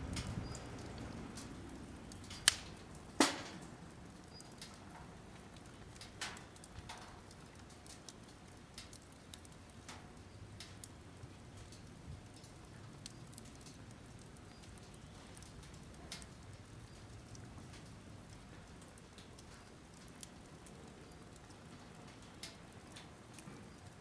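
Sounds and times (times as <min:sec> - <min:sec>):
firewood crackling: 0:00.0 - 0:24.0
sharp loud pops of fire: 0:02.3 - 0:03.6.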